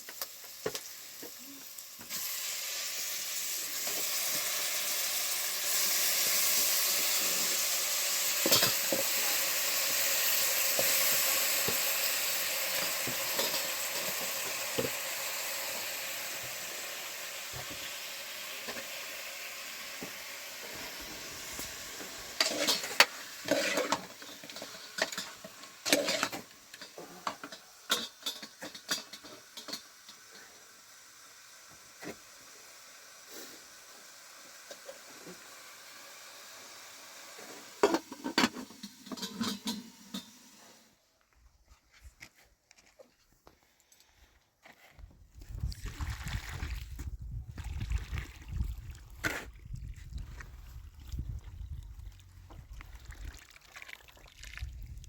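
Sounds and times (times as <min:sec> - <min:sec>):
food sizzling in a pan: 0:00.0 - 0:40.9
utensils clinking and scraping pan: 0:05.7 - 0:15.1, 0:21.5 - 0:30.5, 0:37.4 - 0:40.5.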